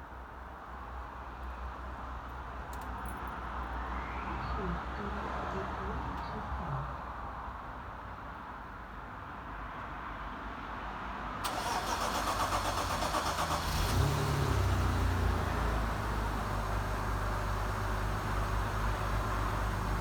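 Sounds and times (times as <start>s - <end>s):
starter motor cranking: 11.5s - 14.1s
car engine idling: 11.5s - 20.0s.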